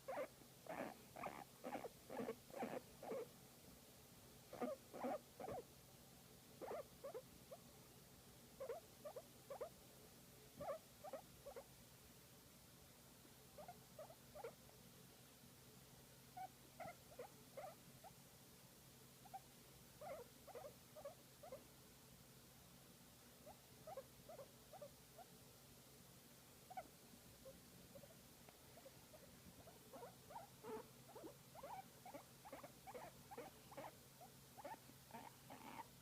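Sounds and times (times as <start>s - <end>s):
guinea pig squeaking: 0.0s - 3.3s, 4.5s - 5.7s, 6.6s - 7.6s, 8.6s - 9.8s, 10.6s - 11.7s, 13.6s - 14.6s, 16.4s - 18.2s, 19.2s - 21.6s, 23.4s - 25.3s, 26.7s - 28.1s, 28.8s - 35.9s.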